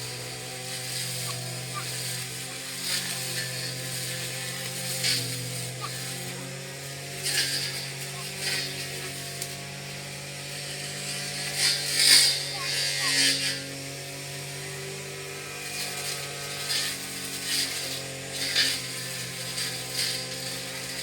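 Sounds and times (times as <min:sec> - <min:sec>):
brush cutter engine running: 0:00.0 - 0:21.0
cutter swishing through grass: 0:00.0 - 0:21.0.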